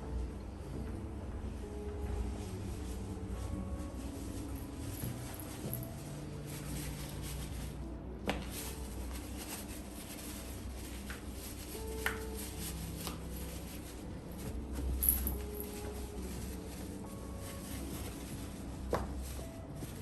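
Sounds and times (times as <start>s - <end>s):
low room hum: 0.0s - 20.0s.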